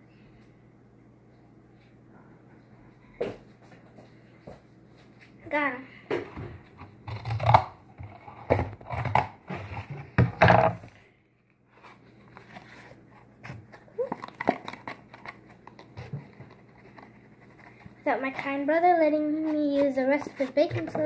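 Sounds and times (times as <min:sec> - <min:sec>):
packet crinkling and tearing: 0:14.0 - 0:15.9.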